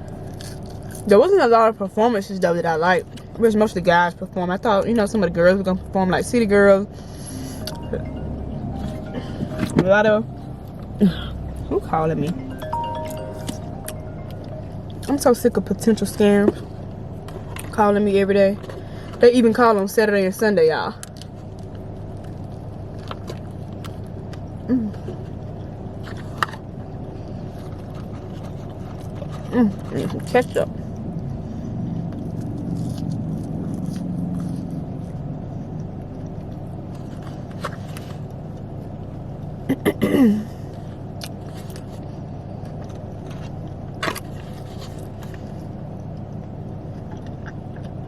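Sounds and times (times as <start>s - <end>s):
chewing sounds: 0.0s - 1.1s, 21.0s - 39.0s, 40.9s - 48.0s
car climate fan hum: 0.0s - 48.0s
low background rumble: 0.0s - 48.0s
chewing mouth sounds: 27.6s - 38.7s.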